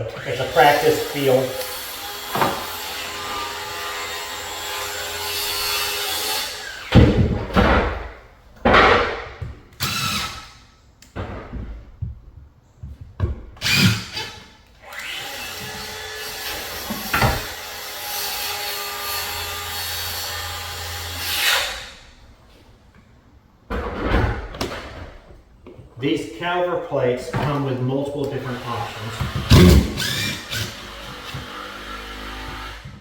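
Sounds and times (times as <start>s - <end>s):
power tool motor running: 28.8s - 32.9s.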